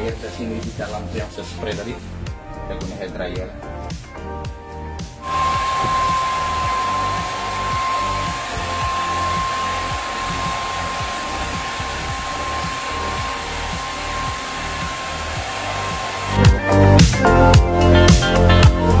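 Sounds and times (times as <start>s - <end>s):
hair dryer running: 5.0s - 18.3s.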